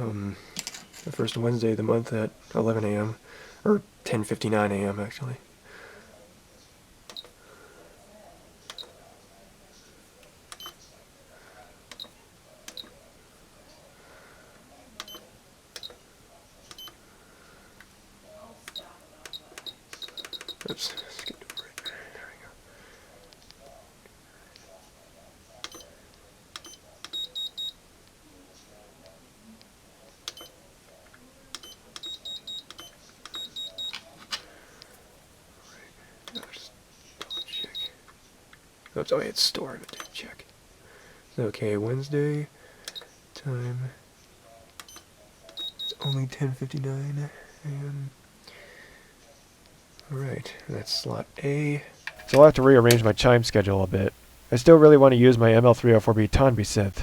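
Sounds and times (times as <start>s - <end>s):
button clicks with beeps: 25.6s - 25.9s.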